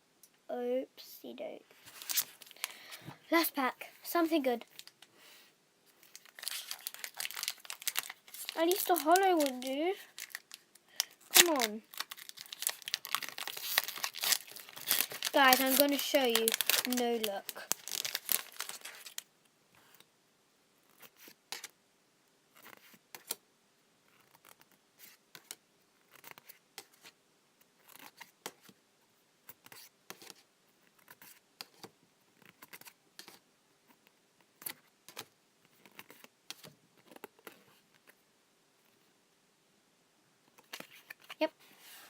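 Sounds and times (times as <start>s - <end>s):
wrapper crinkle: 1.9s - 3.1s, 4.2s - 5.1s, 5.9s - 19.3s.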